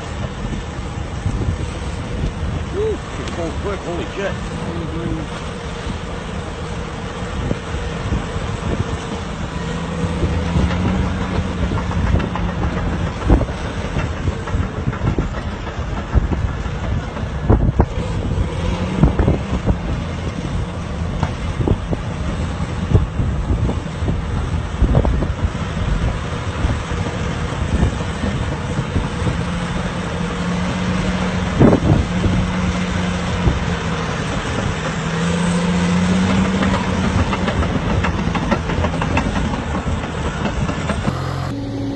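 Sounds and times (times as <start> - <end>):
heavy vehicle engine running: 0.0 - 41.9
sharp knocks and clanks: 36.0 - 41.5.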